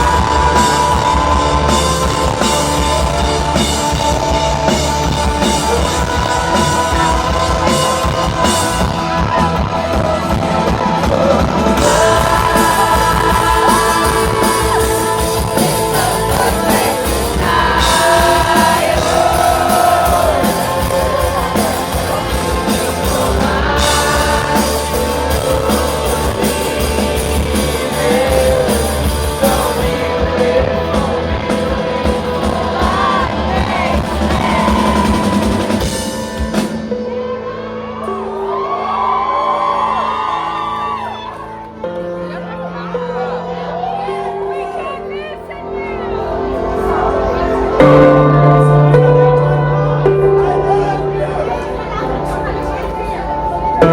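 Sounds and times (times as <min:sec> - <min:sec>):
person singing: 0:00.0 - 0:38.6
rock band playing live: 0:00.0 - 0:53.9.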